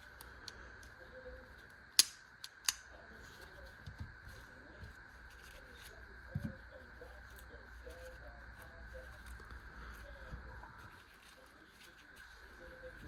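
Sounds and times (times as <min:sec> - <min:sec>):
sharp clacks of hard objects: 0:02.0 - 0:02.8.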